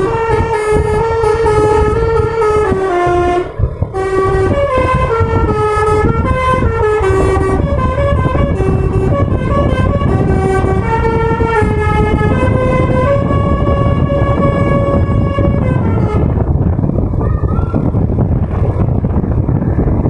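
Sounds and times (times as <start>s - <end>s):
multi-tone bus horn playing a tune: 0.0s - 16.7s
low engine rumble: 0.0s - 20.0s.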